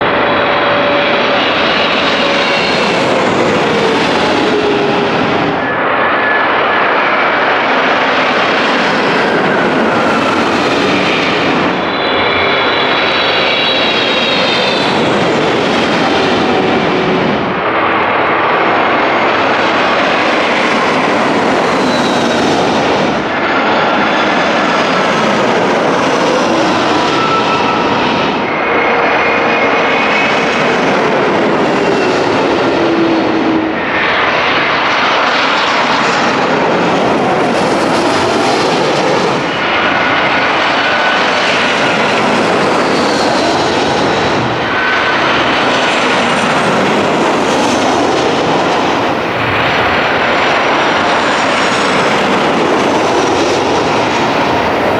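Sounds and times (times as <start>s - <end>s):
jet airliners passing overhead: 0.0s - 54.9s.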